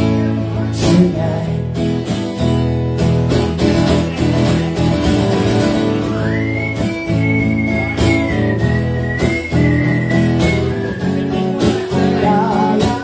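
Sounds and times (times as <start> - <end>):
acoustic guitar chords: 0.0 - 13.0
high whistled note: 5.8 - 11.2.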